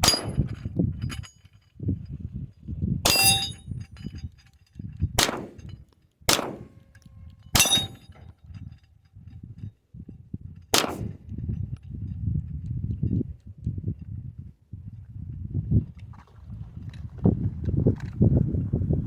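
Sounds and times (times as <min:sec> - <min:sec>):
metallic clang of steel target: 0:00.0 - 0:01.3, 0:03.1 - 0:04.2, 0:05.2 - 0:06.9, 0:07.5 - 0:08.2
wind rumbling on microphone: 0:00.0 - 0:19.0
pistol shots: 0:05.2 - 0:05.7, 0:06.3 - 0:06.8, 0:07.6 - 0:08.0, 0:10.8 - 0:11.2.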